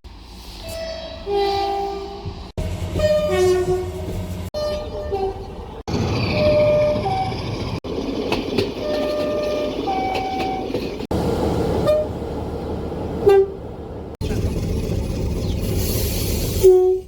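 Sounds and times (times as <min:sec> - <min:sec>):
passing trains running: 0:00.1 - 0:17.0
two-tone train horns: 0:00.6 - 0:05.5, 0:06.4 - 0:07.4, 0:08.8 - 0:10.8, 0:11.8 - 0:12.2, 0:13.2 - 0:13.6, 0:16.6 - 0:17.0.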